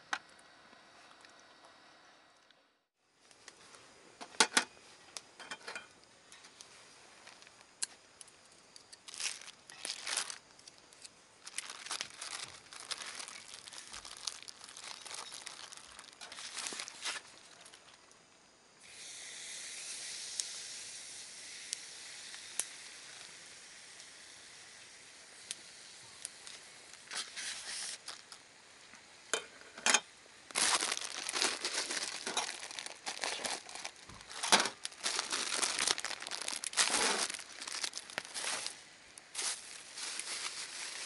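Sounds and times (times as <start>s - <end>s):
crinkling and rustling: 3.2s - 18.0s, 26.2s - 28.4s, 29.5s - 41.0s
food sizzling: 18.8s - 28.1s, 30.5s - 41.0s.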